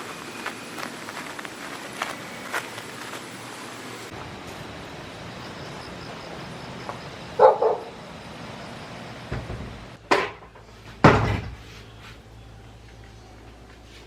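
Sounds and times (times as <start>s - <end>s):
dog barking: 7.4s - 8.0s
sharp knocks: 9.3s - 11.6s.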